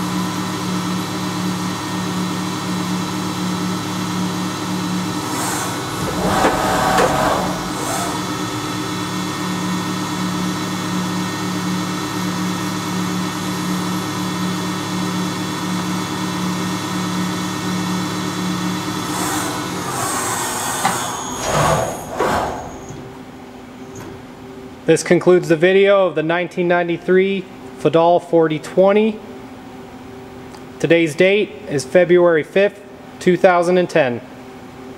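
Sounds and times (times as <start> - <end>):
machine hum with held tones: 0.3 - 23.1
mechanical noise: 5.2 - 8.8.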